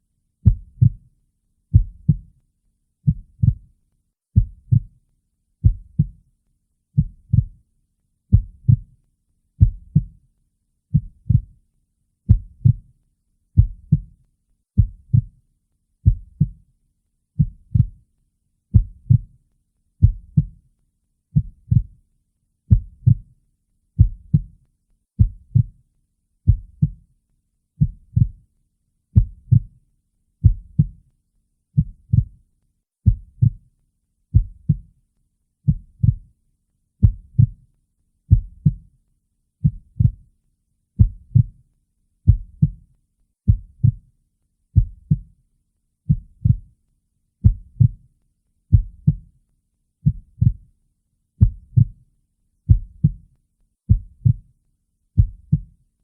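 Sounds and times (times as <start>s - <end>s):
slow heartbeat: 0.4s - 1.1s, 1.7s - 2.4s, 3.0s - 3.7s, 4.4s - 5.0s, 5.6s - 6.2s, 7.0s - 7.6s, 8.3s - 8.9s, 9.6s - 10.2s, 10.9s - 11.6s, 12.3s - 12.9s, 13.6s - 14.2s, 14.8s - 15.4s, 16.0s - 16.6s, 17.4s - 18.0s, 18.7s - 19.4s, 20.0s - 20.6s, 21.4s - 22.0s, 22.7s - 23.3s, 24.0s - 24.6s, 25.2s - 25.8s, 26.5s - 27.0s, 27.8s - 28.4s, 29.2s - 29.7s, 30.4s - 31.0s, 31.8s - 32.4s, 33.0s - 33.7s, 34.3s - 34.9s, 35.7s - 36.3s, 37.0s - 37.6s, 38.3s - 38.9s, 39.6s - 40.2s, 41.0s - 41.6s, 42.3s - 42.8s, 43.5s - 44.0s, 44.8s - 45.3s, 46.1s - 46.7s, 47.4s - 48.0s, 48.7s - 49.3s, 50.0s - 50.6s, 51.4s - 52.0s, 52.7s - 53.2s, 53.9s - 54.5s, 55.2s - 55.7s.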